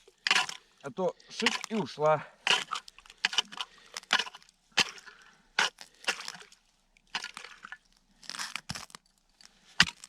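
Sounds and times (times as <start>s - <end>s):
water splashing: 0.0s - 7.9s
ice crackling: 0.0s - 10.0s.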